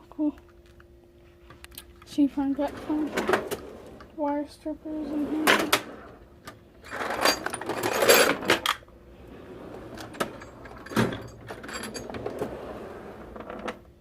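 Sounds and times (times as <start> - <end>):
metal tools clinking and rattling: 6.8 - 8.8, 10.0 - 12.4.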